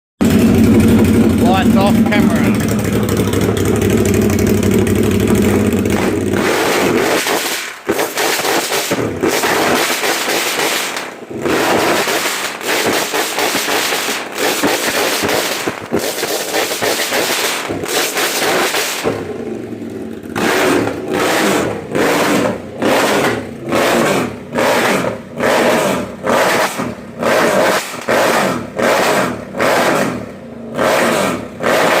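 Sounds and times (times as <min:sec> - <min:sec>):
motorcycle engine hitting rev limiter: 0:00.2 - 0:10.3.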